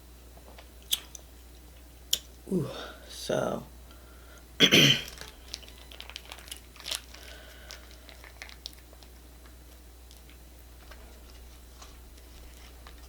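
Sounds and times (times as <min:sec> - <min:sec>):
crunchy taco being chewed: 0:05.0 - 0:13.0.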